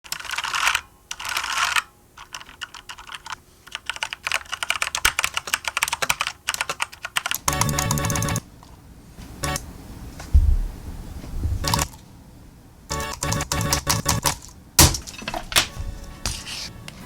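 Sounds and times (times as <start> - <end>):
mechanical keyboard typing: 0.1 - 8.4, 11.6 - 12.0, 12.9 - 14.6.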